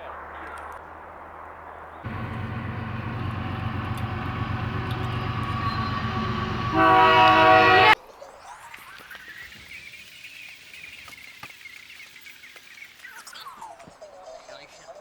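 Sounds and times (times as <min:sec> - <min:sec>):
train air horn: 0:02.1 - 0:08.0
train rumbling past: 0:02.1 - 0:08.0.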